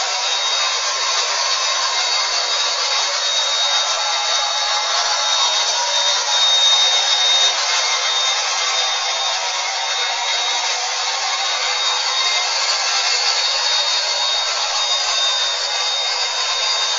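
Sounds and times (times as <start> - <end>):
carpet cleaner motor running: 0.0 - 16.9
thin high whine: 0.0 - 16.9.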